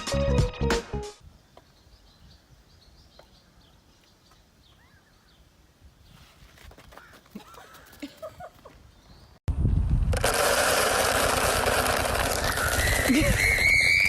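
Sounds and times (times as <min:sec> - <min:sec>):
outdoor background noise: 0:01.2 - 0:14.0
faint bird chirps: 0:01.4 - 0:06.3.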